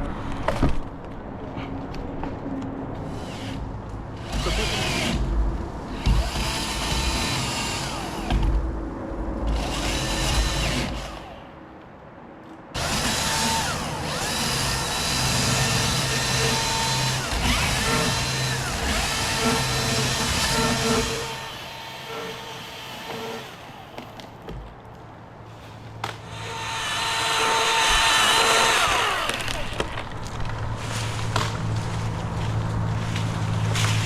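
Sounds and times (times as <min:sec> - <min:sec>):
electric chainsaw cutting wood: 0:04.2 - 0:08.6, 0:09.4 - 0:11.5, 0:12.8 - 0:24.3, 0:26.2 - 0:31.9.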